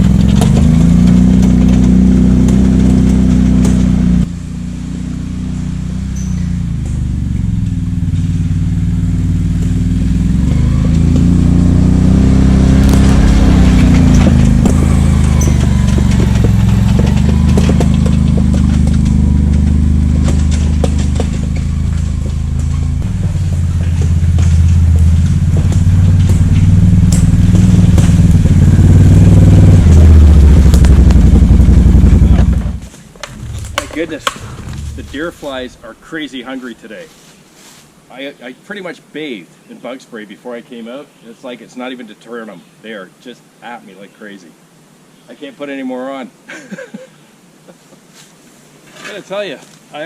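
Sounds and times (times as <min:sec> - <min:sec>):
knocks and rattles: 0:00.0 - 0:04.2, 0:12.4 - 0:35.8
tractor diesel engine running: 0:00.0 - 0:36.2.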